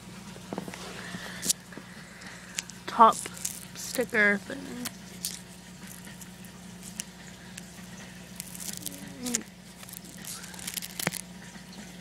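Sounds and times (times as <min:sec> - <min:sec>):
fingers peeling a sticker: 0:08.4 - 0:11.2.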